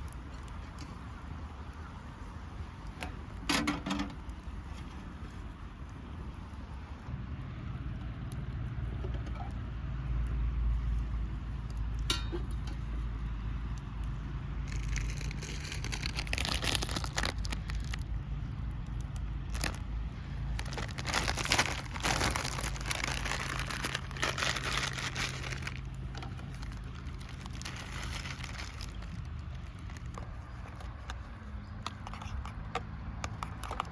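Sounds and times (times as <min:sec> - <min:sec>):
crinkling and rustling handling: 0:00.0 - 0:07.1, 0:08.4 - 0:33.9.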